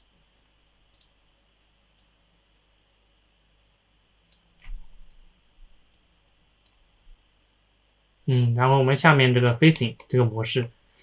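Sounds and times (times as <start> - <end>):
computer mouse clicking: 0.9 - 1.2, 4.3 - 4.8.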